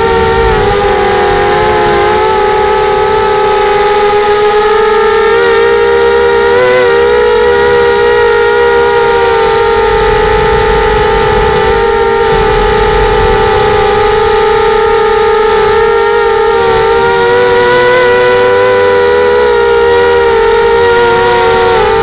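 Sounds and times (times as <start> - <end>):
quadcopter motors whining: 0.0 - 22.0.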